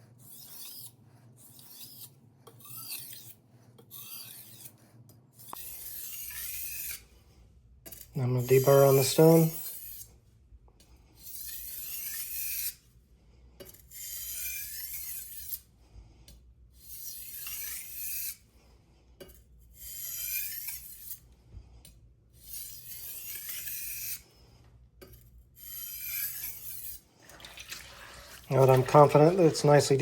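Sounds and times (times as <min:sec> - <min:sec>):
knife scraping on sharpening stone: 0:00.2 - 0:04.8, 0:05.4 - 0:07.1, 0:07.9 - 0:10.1, 0:11.2 - 0:12.8, 0:13.6 - 0:15.7, 0:16.8 - 0:18.4, 0:19.2 - 0:21.2, 0:22.4 - 0:24.3, 0:25.0 - 0:27.0.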